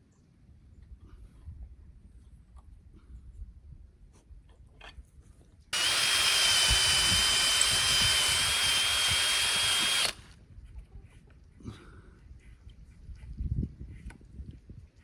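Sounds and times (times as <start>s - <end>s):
power drill whining: 5.8s - 10.2s.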